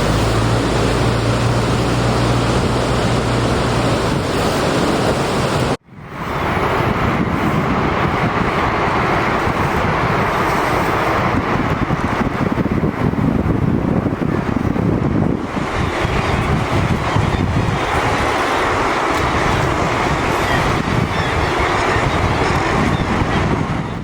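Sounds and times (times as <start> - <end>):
low motor hum: 0.0 - 24.0
wind buffeting microphone: 0.0 - 24.0.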